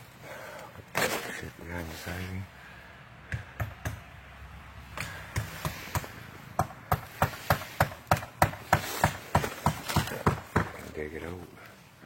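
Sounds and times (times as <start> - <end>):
hammer striking: 3.3 - 4.1, 5.0 - 10.8.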